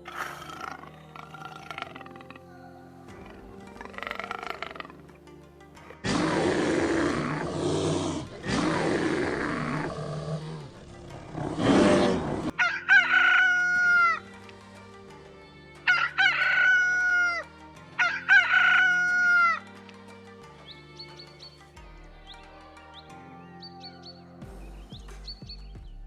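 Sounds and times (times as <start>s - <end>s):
deep rough animal call: 0.0s - 2.5s, 3.1s - 5.1s, 6.0s - 12.5s
soft background music: 0.0s - 26.0s
rooster crowing: 12.5s - 14.2s, 15.9s - 17.4s, 18.0s - 19.6s.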